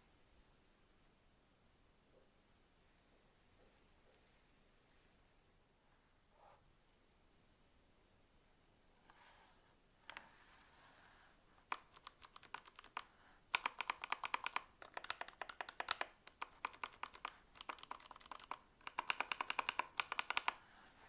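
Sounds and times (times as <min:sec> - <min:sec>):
mechanical keyboard typing: 0:11.7 - 0:20.6.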